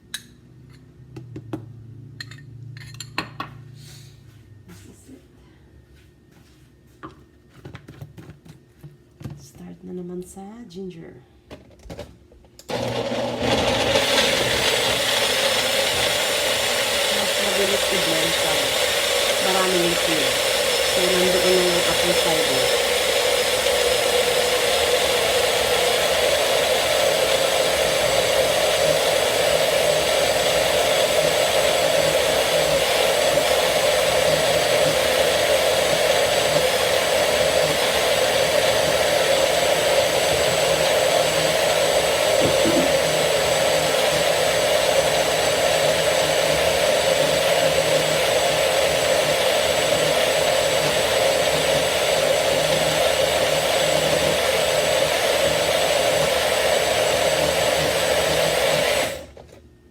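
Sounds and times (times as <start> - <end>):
electric blender running: 12.6 - 59.5.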